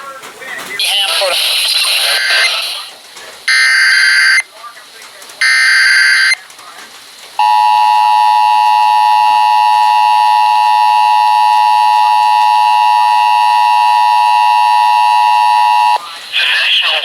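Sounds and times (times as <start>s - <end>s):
two-tone electronic alarm tone: 2.1s - 2.6s, 3.5s - 4.4s, 5.4s - 6.4s, 7.4s - 16.0s.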